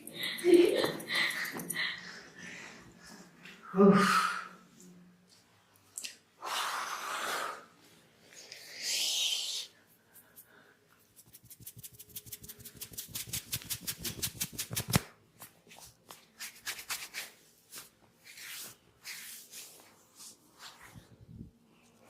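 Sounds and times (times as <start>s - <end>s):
rubbing on skin and hair: 10.2s - 15.0s, 15.7s - 21.1s.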